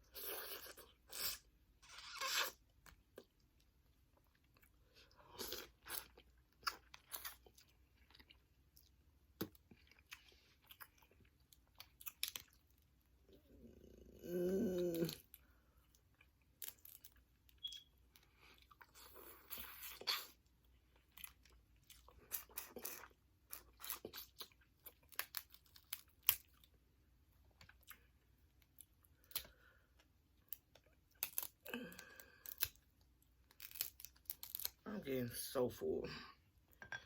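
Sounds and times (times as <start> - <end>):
person humming: 13.8 - 15.2.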